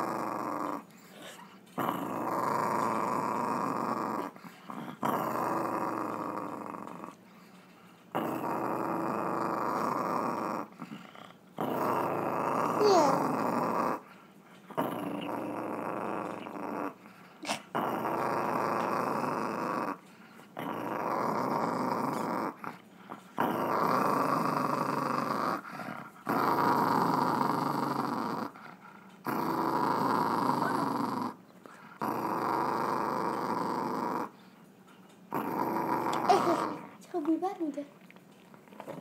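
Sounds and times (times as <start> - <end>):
small dog growling: 0.0 - 39.0.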